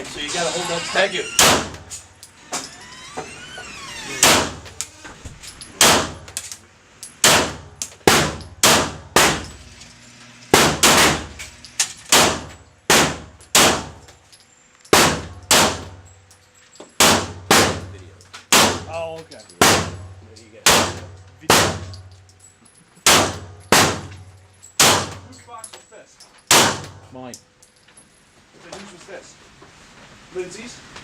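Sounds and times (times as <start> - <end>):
gunshots with ringing decay: 1.4 - 1.8, 5.8 - 6.3, 7.2 - 9.5, 10.6 - 11.3, 12.1 - 14.0, 15.0 - 16.0, 18.5 - 18.9, 19.6 - 22.0, 23.0 - 24.1, 24.8 - 25.3, 26.5 - 27.0.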